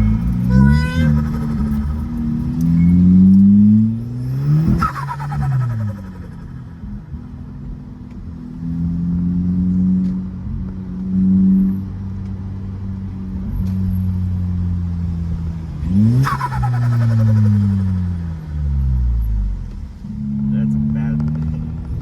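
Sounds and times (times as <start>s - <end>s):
loud turbo flutter: 0.0s - 7.1s, 15.8s - 18.8s
car engine revving: 0.0s - 22.0s.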